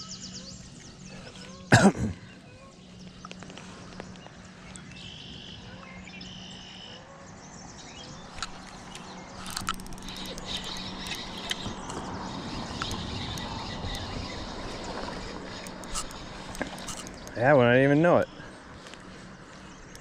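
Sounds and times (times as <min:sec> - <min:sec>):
small birds warbling: 0:00.0 - 0:20.0
steady low hum: 0:00.0 - 0:20.0
sharp clicks: 0:08.3 - 0:17.4.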